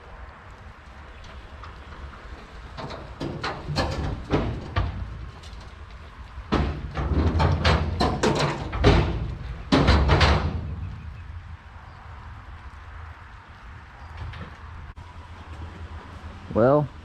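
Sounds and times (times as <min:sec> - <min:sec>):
rattling knocks and clanks: 0:01.2 - 0:11.3.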